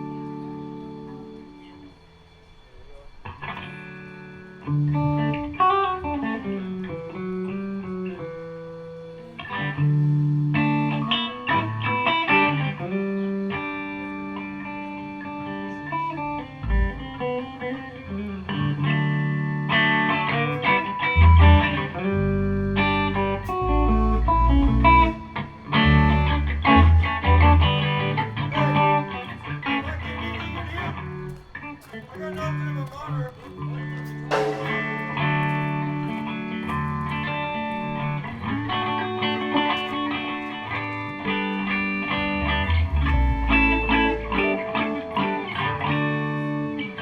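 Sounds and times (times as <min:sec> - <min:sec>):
electric guitar playing: 0:00.0 - 0:02.6, 0:03.2 - 0:31.8, 0:33.5 - 0:47.0
deep bass notes: 0:16.6 - 0:17.2, 0:21.2 - 0:30.0, 0:41.6 - 0:46.9.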